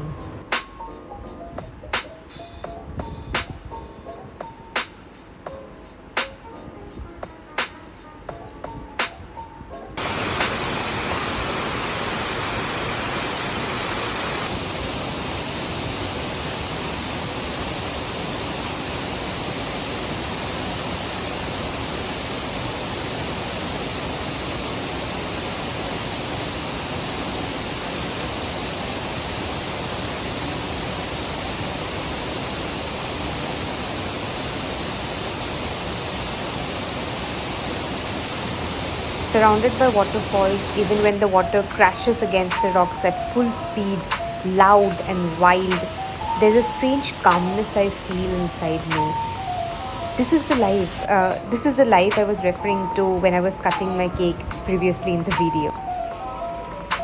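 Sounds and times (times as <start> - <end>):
waterfall crashing onto rocks: 10.0 - 41.2.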